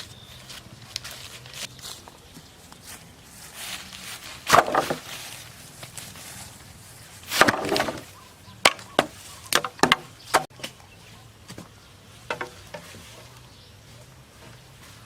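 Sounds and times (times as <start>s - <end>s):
blade chopping bamboo: 4.4s - 5.2s, 7.2s - 10.8s.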